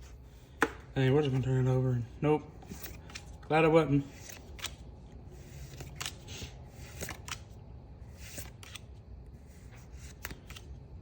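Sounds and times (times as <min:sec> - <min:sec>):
trading cards rustling: 0:02.6 - 0:11.0.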